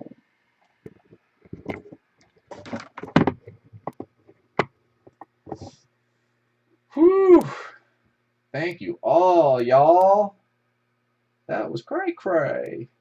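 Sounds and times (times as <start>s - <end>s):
handling knocks and taps: 0.9s - 5.8s.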